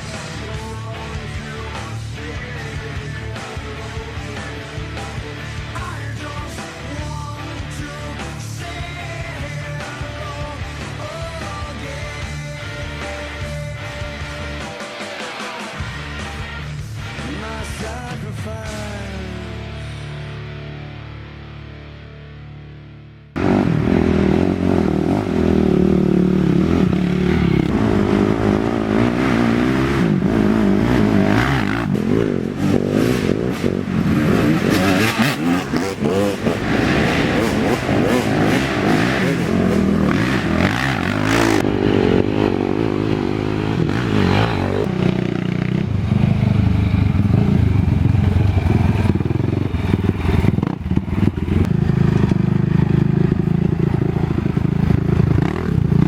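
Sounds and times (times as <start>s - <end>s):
atv engines running hard: 0.0s - 20.8s, 23.3s - 56.0s.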